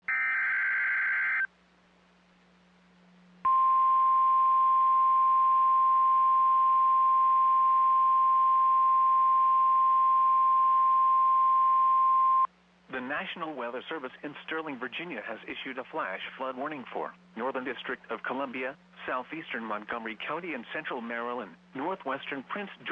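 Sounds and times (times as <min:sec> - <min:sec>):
loud steady alarm tone: 0:00.0 - 0:01.5
faint hum: 0:01.3 - 0:22.9.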